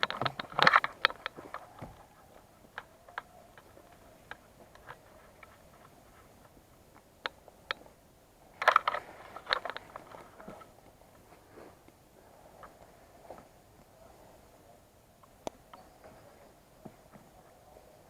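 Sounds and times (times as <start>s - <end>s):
sharp clicks: 0.0s - 6.0s.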